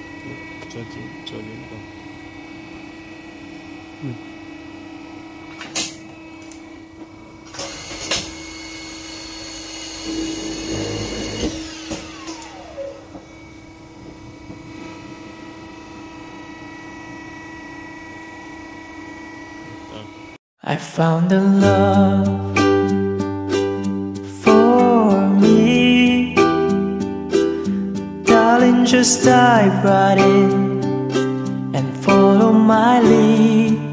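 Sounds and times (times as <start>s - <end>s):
flaring head whine: 0.0s - 20.4s
motor hum: 0.0s - 20.4s.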